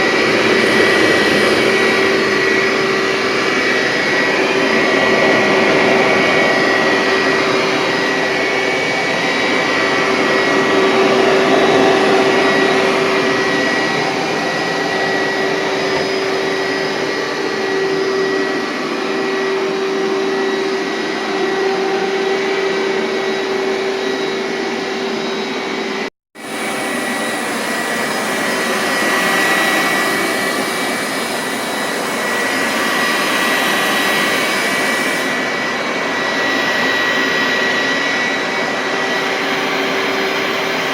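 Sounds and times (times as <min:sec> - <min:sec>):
carpet cleaner motor drone: 0:00.0 - 0:40.9.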